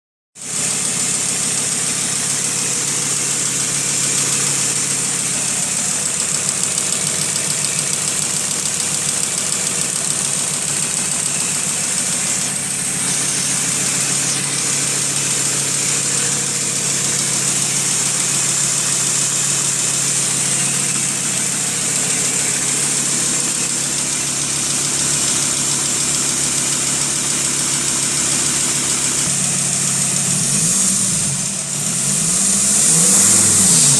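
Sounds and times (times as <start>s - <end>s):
car engine idling: 0.4s - 33.9s.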